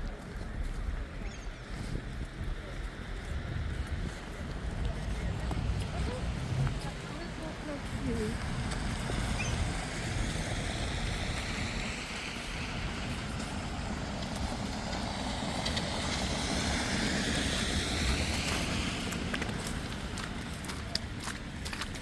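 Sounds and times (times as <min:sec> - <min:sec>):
street traffic noise: 0:00.0 - 0:22.0
vehicle tyre hiss: 0:07.7 - 0:20.6.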